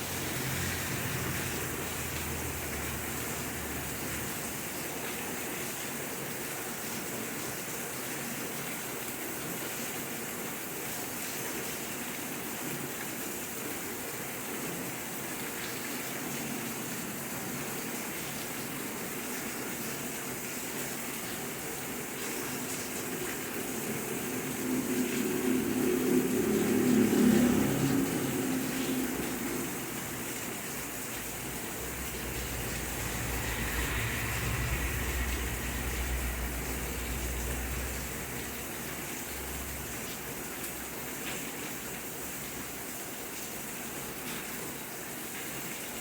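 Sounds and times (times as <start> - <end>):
steady rainfall: 0.0 - 46.0
low rumble: 23.2 - 38.6.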